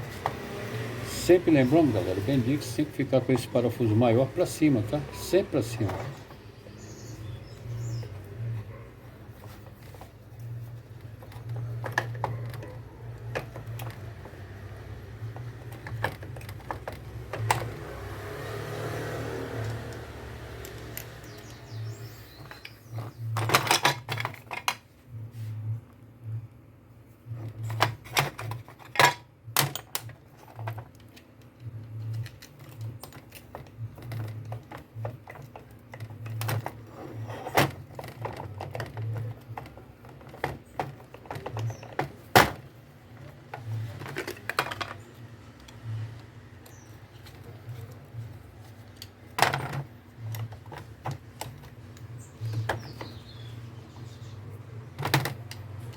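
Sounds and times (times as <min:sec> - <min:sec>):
metal parts and tools clinking: 0:19.6 - 0:24.8, 0:27.4 - 0:55.9.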